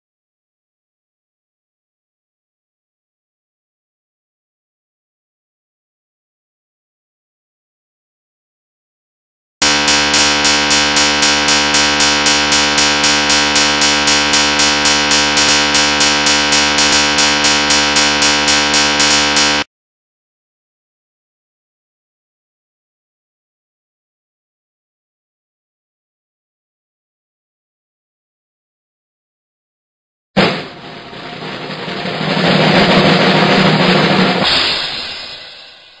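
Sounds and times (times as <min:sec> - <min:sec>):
cymbal crash: 0:09.6 - 0:19.6, 0:30.4 - 0:36.0
drum roll: 0:09.6 - 0:19.6, 0:30.4 - 0:36.0
harsh pulsing electronic buzz: 0:09.6 - 0:19.7.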